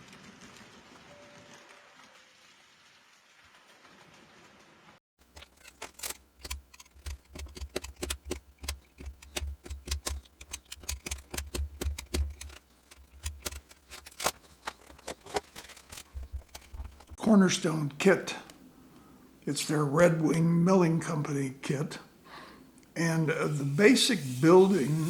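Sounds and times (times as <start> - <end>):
clicks and light taps: 5.3 - 17.2.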